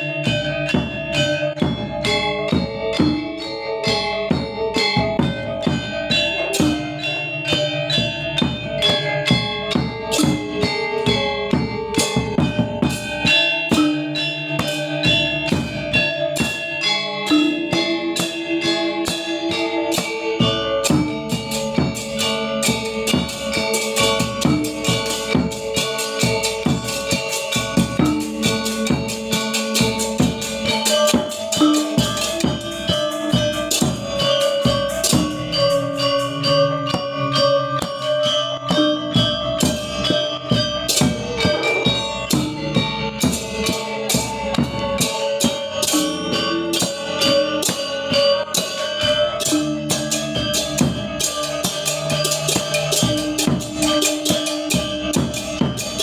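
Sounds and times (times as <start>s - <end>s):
drums: 0.0s - 56.0s
metallophones and gongs: 0.0s - 56.0s.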